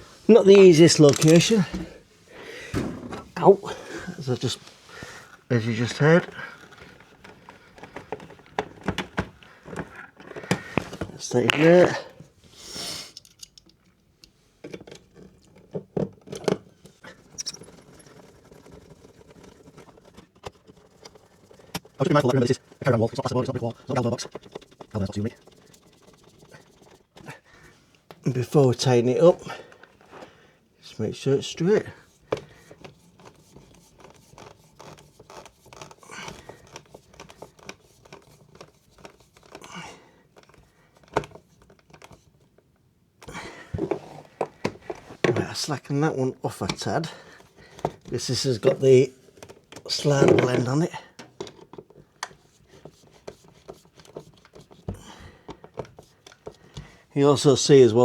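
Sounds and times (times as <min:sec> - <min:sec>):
plastic faceplate clicks and scrapes: 0:06.1 - 0:11.9, 0:14.6 - 0:27.3, 0:32.0 - 0:42.6, 0:46.6 - 0:57.0.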